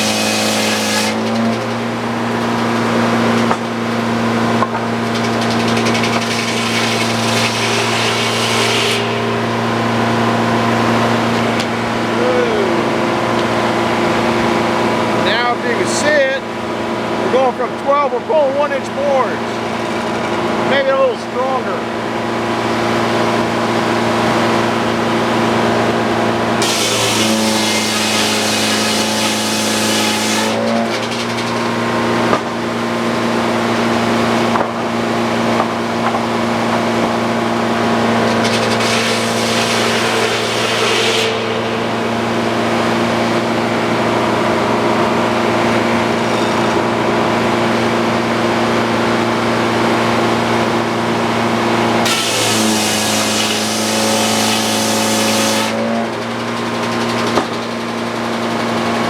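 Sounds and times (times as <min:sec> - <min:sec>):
saw cutting log: 0:00.0 - 0:59.0
sawmill engine humming: 0:00.0 - 0:59.0.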